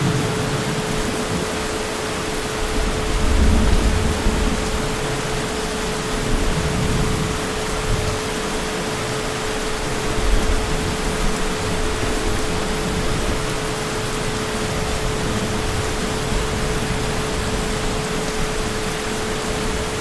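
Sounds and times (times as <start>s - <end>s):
distant thunder rumbling: 0.0s - 8.2s
heavy rain: 0.0s - 20.0s.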